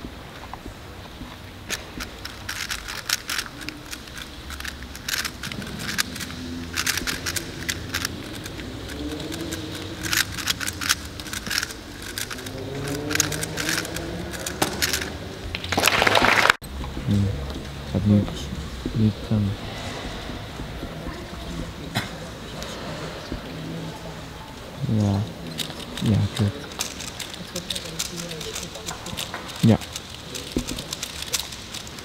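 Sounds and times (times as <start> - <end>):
puzzle cube clicking: 1.7 - 15.8, 24.8 - 32.0
faint murmuring voices: 17.0 - 31.5.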